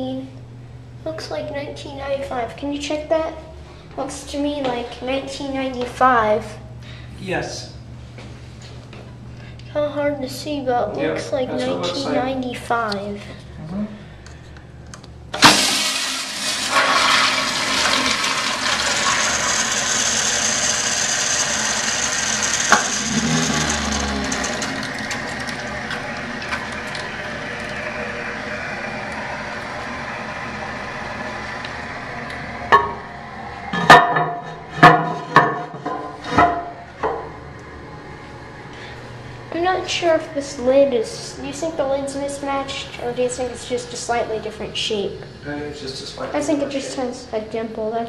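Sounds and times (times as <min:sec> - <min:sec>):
toilet flushing: 0:15.3 - 0:40.6.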